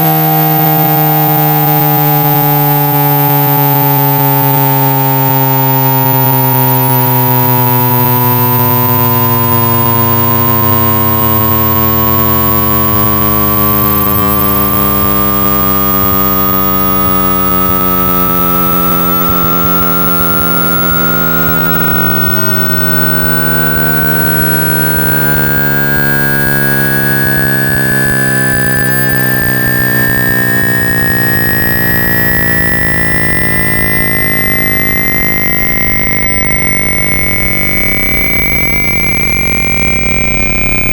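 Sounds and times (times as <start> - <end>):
dense cluster of tones: 0.0 - 40.9
pure tone sweeping upward: 0.0 - 40.9
low steady hum: 0.5 - 40.9.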